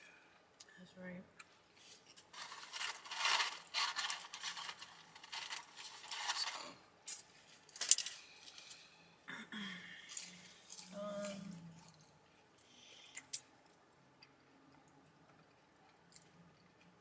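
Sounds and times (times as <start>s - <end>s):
rustling and clinking objects: 1.8s - 8.9s.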